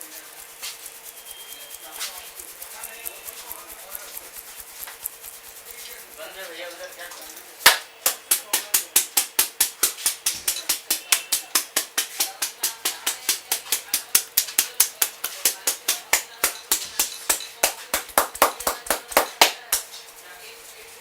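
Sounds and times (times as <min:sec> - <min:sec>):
hands tapping on head: 0:07.0 - 0:19.9.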